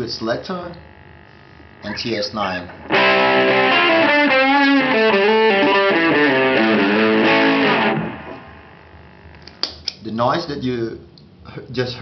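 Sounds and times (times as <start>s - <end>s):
low hiss and hum: 0.0s - 7.3s, 8.0s - 12.0s
overdriven electric guitar notes: 2.8s - 9.0s.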